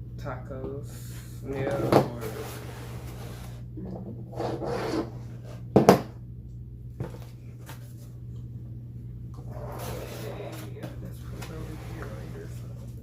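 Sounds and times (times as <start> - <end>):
steady low hum: 0.0 - 13.0
food containers rubbing and scraping: 1.7 - 3.6, 4.3 - 5.6, 9.4 - 13.0.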